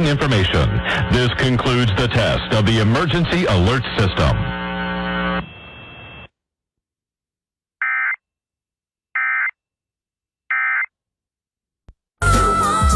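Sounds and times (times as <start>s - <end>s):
fm radio broadcast: 0.0s - 6.3s.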